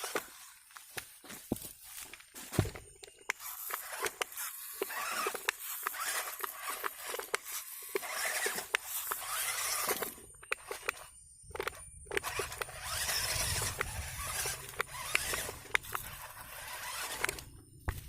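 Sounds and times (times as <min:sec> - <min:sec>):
tyres crunching over gravel: 0:00.0 - 0:18.0.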